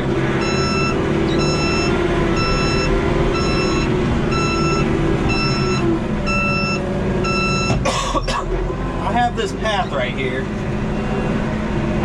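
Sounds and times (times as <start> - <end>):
engine running: 0.0 - 12.0
reverse backup alarm beeping: 0.4 - 7.8.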